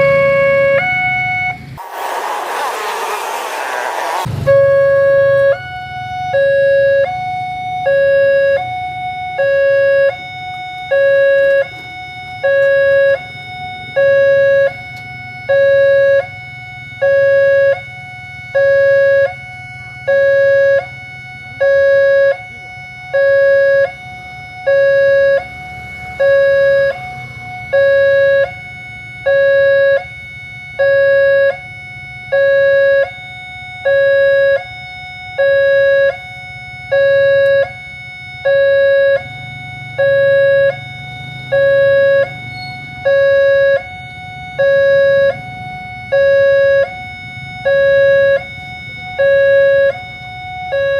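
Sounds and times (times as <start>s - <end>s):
level-crossing two-tone alarm: 0.0s - 50.9s
steady high tone: 0.0s - 50.9s.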